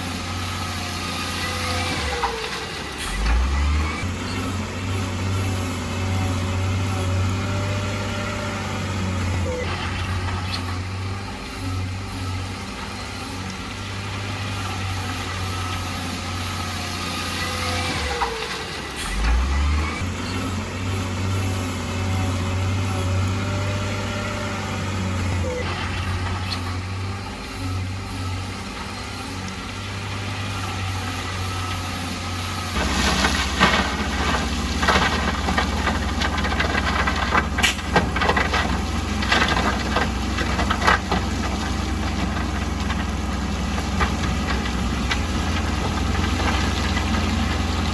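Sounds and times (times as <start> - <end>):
heavy machinery engines running: 0.0 - 47.9
rattling and clanking knocks: 32.8 - 47.9.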